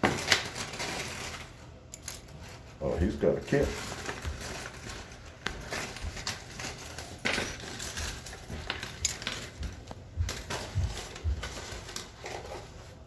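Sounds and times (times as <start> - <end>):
lock-picking tools clicking and scraping: 0.0 - 12.6.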